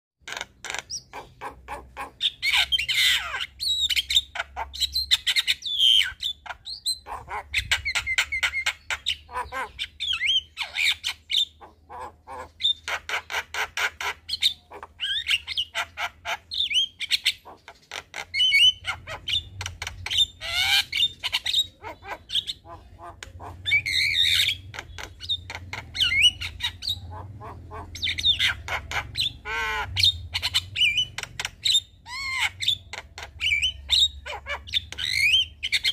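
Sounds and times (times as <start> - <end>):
myna chattering: 21.2 - 29.9.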